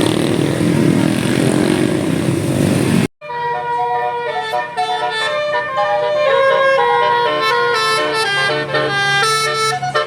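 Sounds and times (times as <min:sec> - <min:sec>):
musical bus horn tune: 0:03.2 - 0:10.0.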